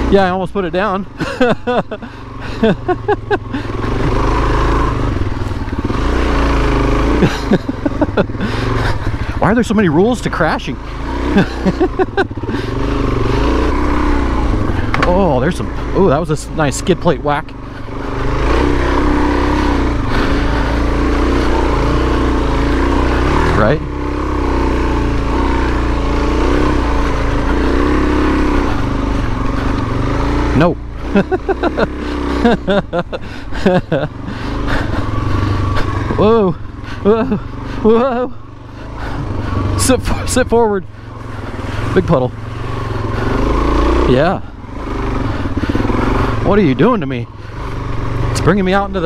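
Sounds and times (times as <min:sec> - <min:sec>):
motorcycle engine under throttle: 0:00.0 - 0:49.0.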